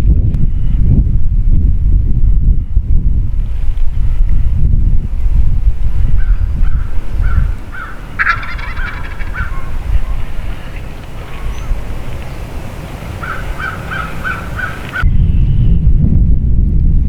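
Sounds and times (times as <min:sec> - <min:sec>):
wind buffeting microphone: 0:00.0 - 0:17.0
short bird calls: 0:06.1 - 0:15.6
wild turkey gobbling: 0:06.2 - 0:15.1.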